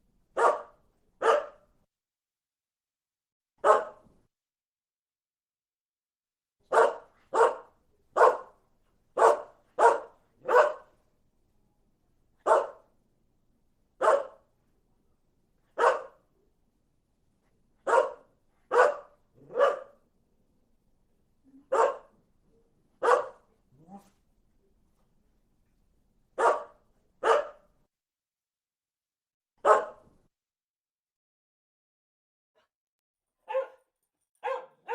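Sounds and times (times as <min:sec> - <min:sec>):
dog barking: 0:00.3 - 0:01.7, 0:03.6 - 0:04.0, 0:06.6 - 0:08.6, 0:09.2 - 0:11.0, 0:12.4 - 0:12.9, 0:14.0 - 0:14.5, 0:15.7 - 0:16.2, 0:17.8 - 0:20.0, 0:21.6 - 0:22.2, 0:23.0 - 0:24.1, 0:26.4 - 0:27.7, 0:29.6 - 0:30.0, 0:33.4 - 0:34.9.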